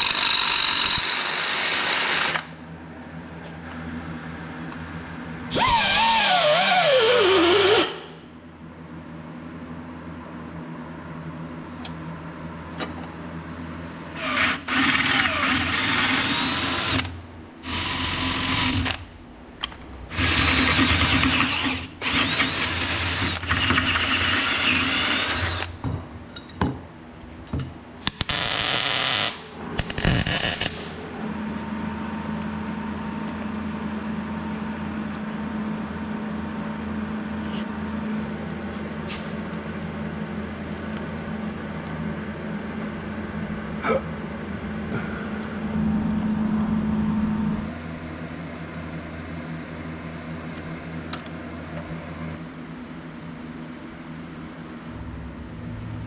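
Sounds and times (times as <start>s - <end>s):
steady low hum: 2.5s - 56.0s
power tool whining: 5.5s - 8.1s, 20.1s - 25.8s.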